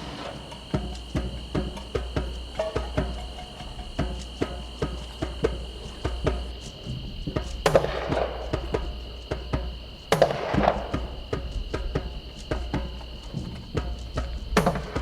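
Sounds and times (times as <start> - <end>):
crashing percussion hits: 0.0 - 7.0
drum and stick knocks: 0.0 - 15.0.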